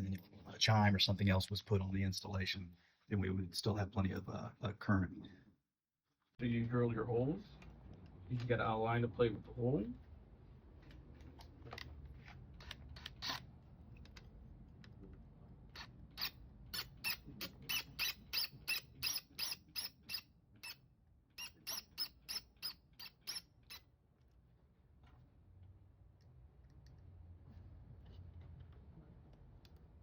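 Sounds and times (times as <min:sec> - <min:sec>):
hand tool squeaky clicks: 0:16.2 - 0:20.8, 0:21.4 - 0:23.8.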